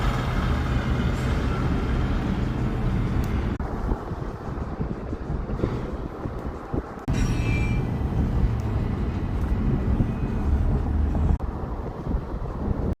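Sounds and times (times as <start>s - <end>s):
freight train rolling past: 0.0s - 12.9s
high squeal: 7.1s - 8.0s.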